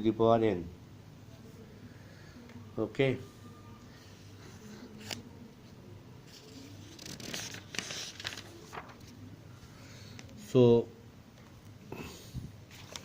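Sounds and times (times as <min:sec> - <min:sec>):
paper rustling: 0:04.4 - 0:05.3, 0:06.2 - 0:09.3, 0:12.7 - 0:13.0.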